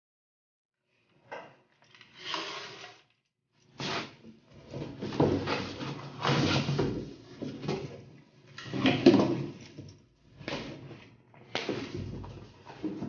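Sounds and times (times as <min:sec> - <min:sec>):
handling scrapes rattles and knocks: 0:03.7 - 0:11.0, 0:11.6 - 0:13.0.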